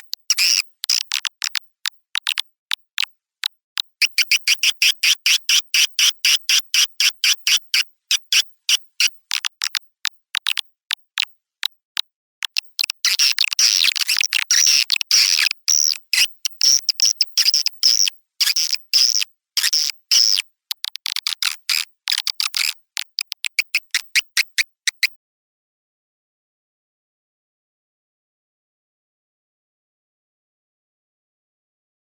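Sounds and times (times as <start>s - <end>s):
rapid dry clicks: 12.4s - 25.1s.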